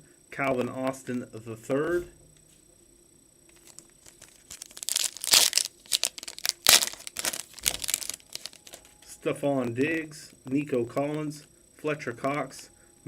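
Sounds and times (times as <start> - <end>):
foil wrapper tearing and crinkling: 3.5 - 8.9.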